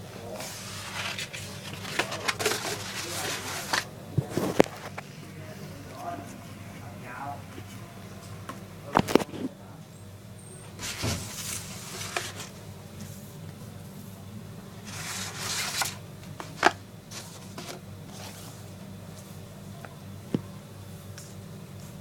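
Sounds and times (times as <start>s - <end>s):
packaging rustling: 0.7s - 5.0s.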